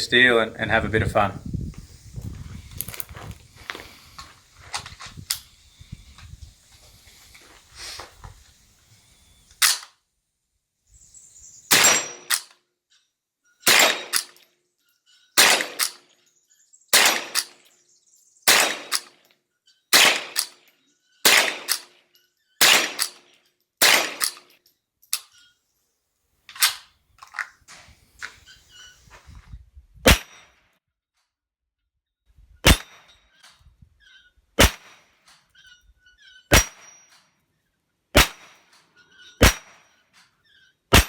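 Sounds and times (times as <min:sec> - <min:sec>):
rifle shots: 0:11.7 - 0:12.5, 0:13.7 - 0:14.4, 0:15.4 - 0:16.0, 0:16.9 - 0:17.6, 0:18.5 - 0:19.2, 0:19.9 - 0:20.6, 0:21.2 - 0:22.0, 0:22.6 - 0:23.2, 0:23.8 - 0:24.4, 0:30.1 - 0:30.5, 0:32.6 - 0:33.0, 0:34.6 - 0:35.1, 0:36.5 - 0:36.9, 0:38.2 - 0:38.6, 0:39.4 - 0:39.9.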